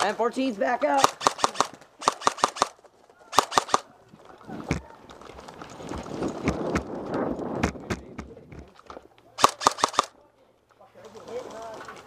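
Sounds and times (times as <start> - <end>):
scattered pops: 0.8 - 3.9, 9.4 - 10.1
airsoft guns firing bursts: 0.9 - 3.9, 9.4 - 10.1.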